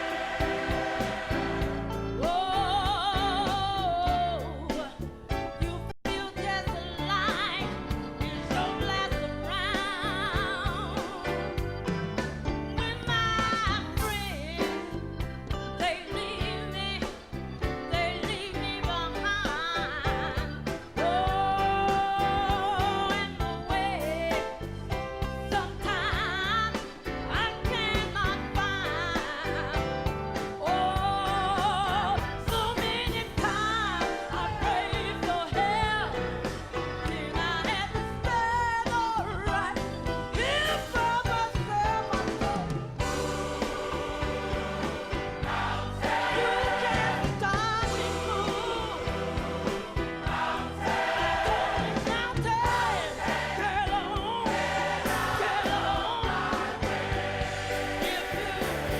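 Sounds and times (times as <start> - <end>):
band with beat and bass: 0.0 - 58.9
woman singing gospel: 2.2 - 5.0, 5.6 - 11.5, 17.9 - 24.6, 25.4 - 44.4, 46.3 - 50.2, 51.4 - 54.7.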